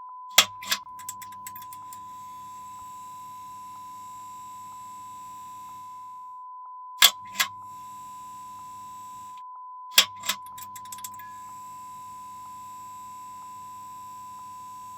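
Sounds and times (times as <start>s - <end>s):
light switch clicking: 0.4s - 1.7s, 7.0s - 7.6s
low electrical hum: 0.4s - 6.1s.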